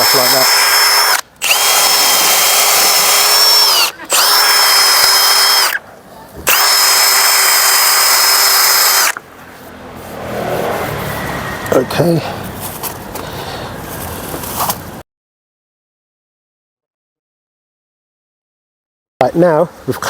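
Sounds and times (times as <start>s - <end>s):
electric drill whining: 0.0s - 5.8s, 6.4s - 9.2s.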